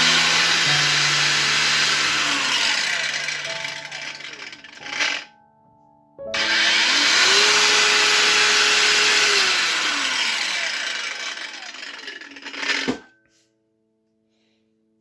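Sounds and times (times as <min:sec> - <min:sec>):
angle grinder motor whine: 0:00.0 - 0:05.3, 0:06.4 - 0:13.1.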